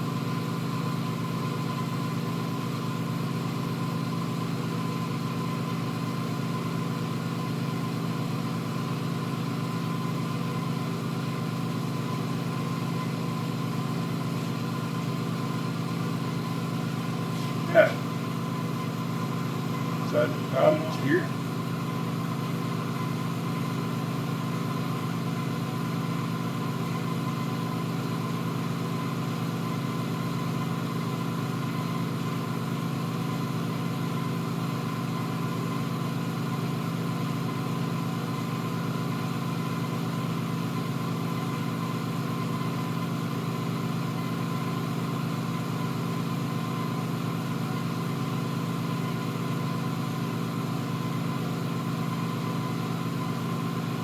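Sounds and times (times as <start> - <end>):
machine hum: 19.9 - 21.5.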